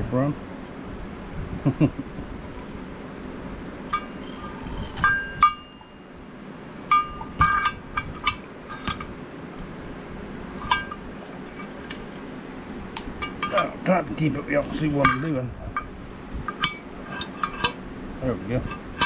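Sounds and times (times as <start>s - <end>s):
steel parts clinking: 2.3s - 2.9s, 3.8s - 9.2s, 10.5s - 12.3s, 12.9s - 17.8s.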